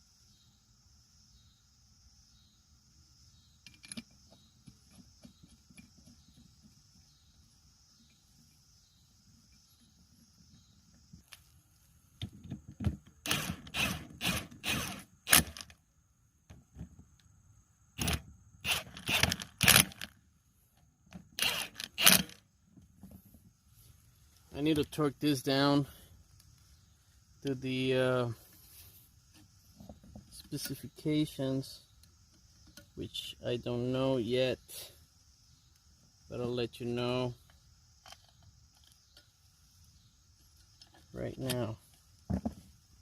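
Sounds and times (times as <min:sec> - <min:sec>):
socket ratchet strokes: 0:13.2 - 0:15.7, 0:18.0 - 0:20.1, 0:21.4 - 0:22.4.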